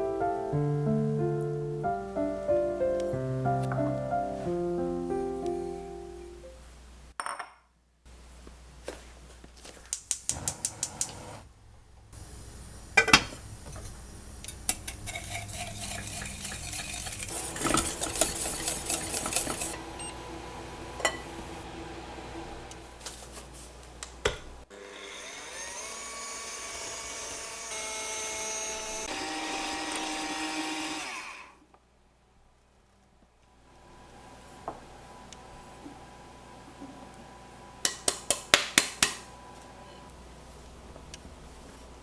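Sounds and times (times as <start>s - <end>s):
mixer clinking against bowl: 13.0s - 21.6s
electric mixer running: 14.2s - 23.1s, 24.7s - 31.6s.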